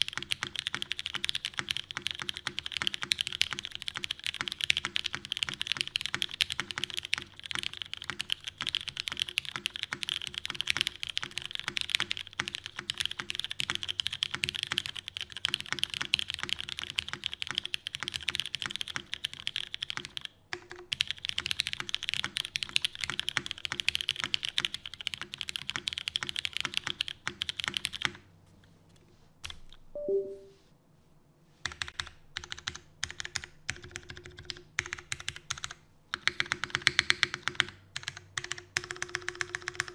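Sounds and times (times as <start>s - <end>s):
fast typing on mechanical keyboard: 0.0s - 28.2s, 31.6s - 39.9s
falling two-note sound: 30.0s - 30.6s.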